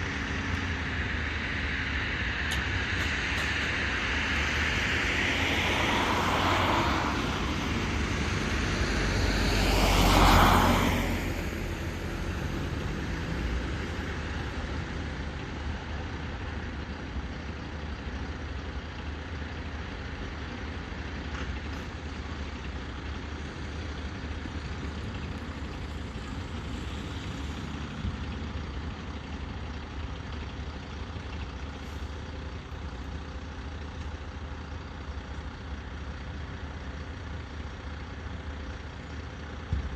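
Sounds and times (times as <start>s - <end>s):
rush of noise: 0.0s - 16.7s
diesel engine running: 0.0s - 39.9s.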